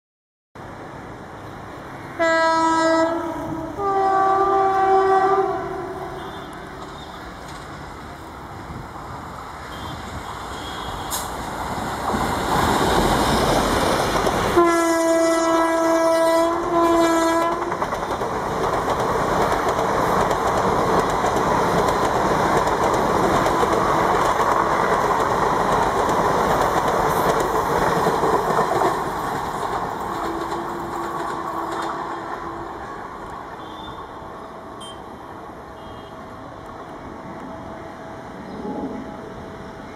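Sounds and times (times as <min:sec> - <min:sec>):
train wheels rumbling on rails: 0:00.9 - 0:39.9
two-tone locomotive horn: 0:02.2 - 0:07.2, 0:09.7 - 0:11.3, 0:14.5 - 0:17.9, 0:30.2 - 0:34.2, 0:34.8 - 0:36.4.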